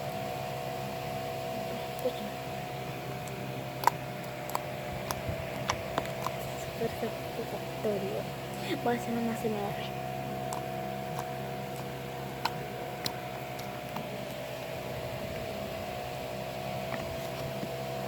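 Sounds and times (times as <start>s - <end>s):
steady electrical hum: 0.0s - 18.0s.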